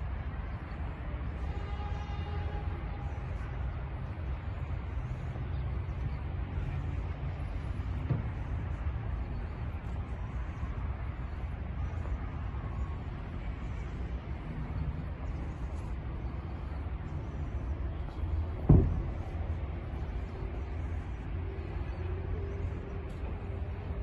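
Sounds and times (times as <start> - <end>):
steady low rumble: 0.0 - 24.0
sharp thump: 18.6 - 19.4.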